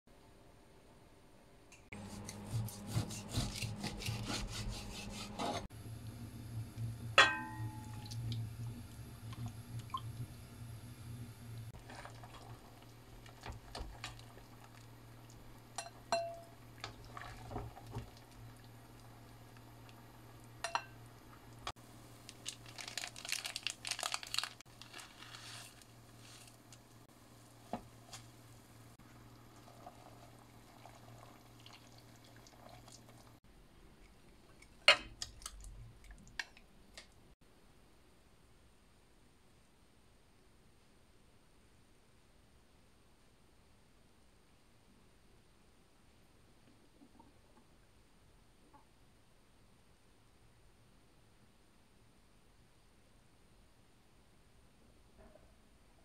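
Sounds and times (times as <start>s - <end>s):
dishes and utensils clinking: 7.2s - 8.1s, 15.8s - 16.6s.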